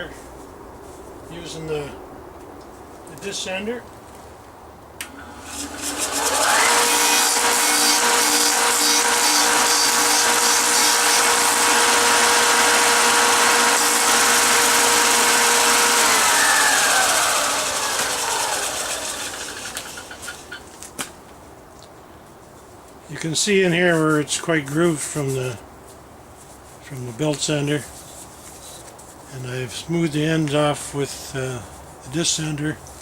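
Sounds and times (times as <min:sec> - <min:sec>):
disc sander motor whining: 0:05.0 - 0:20.6
sander disc hissing on wood: 0:05.1 - 0:20.6.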